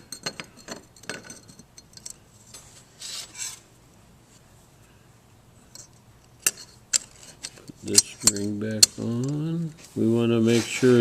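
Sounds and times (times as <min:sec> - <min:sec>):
metal parts clinking: 0:00.0 - 0:02.2, 0:05.7 - 0:09.5
metal scraping rub: 0:03.0 - 0:03.7, 0:09.7 - 0:11.0.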